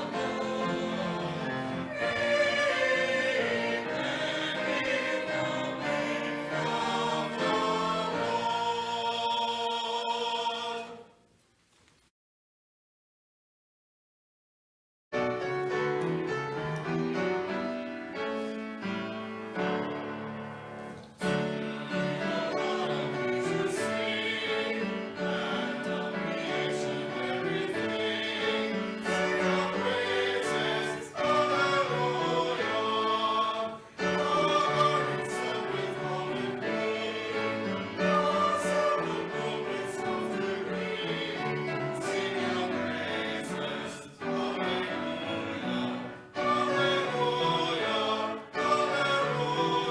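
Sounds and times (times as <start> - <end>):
choir singing: 0.0 - 11.2, 15.7 - 49.9.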